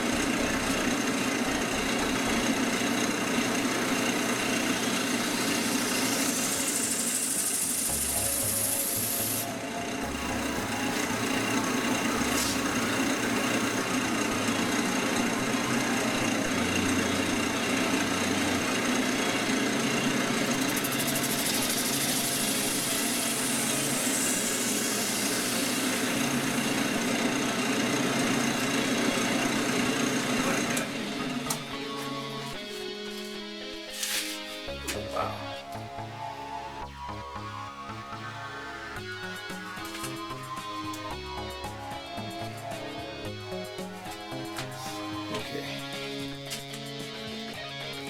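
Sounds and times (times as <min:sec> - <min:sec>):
low motor hum: 0:00.0 - 0:32.6
wood lathe whirring: 0:00.0 - 0:33.4, 0:35.2 - 0:47.6.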